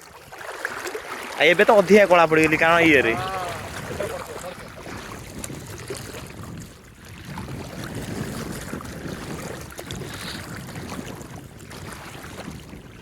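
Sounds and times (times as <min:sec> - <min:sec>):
river water rushing: 0:00.0 - 0:05.3
wind buffeting microphone: 0:01.6 - 0:13.0.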